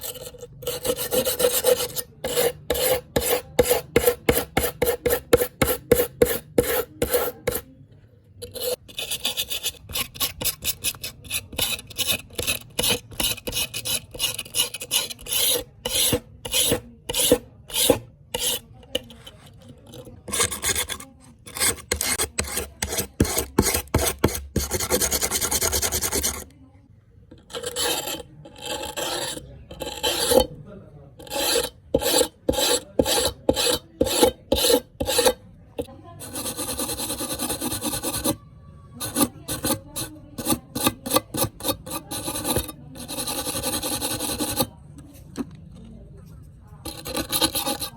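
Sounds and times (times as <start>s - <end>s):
knife blade rasping on abrasive: 0.0s - 7.6s, 8.4s - 19.3s, 27.5s - 30.5s, 31.2s - 35.4s, 46.9s - 47.9s.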